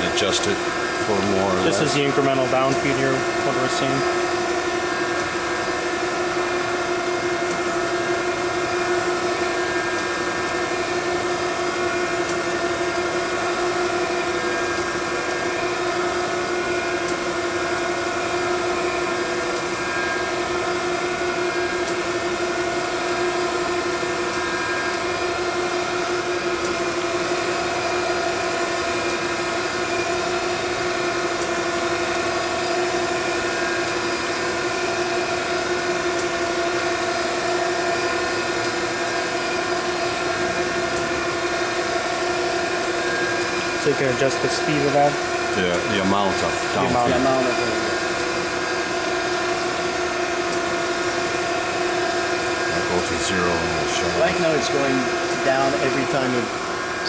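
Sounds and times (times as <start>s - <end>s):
surface grinder humming: 43.1s - 48.2s, 52.3s - 57.0s.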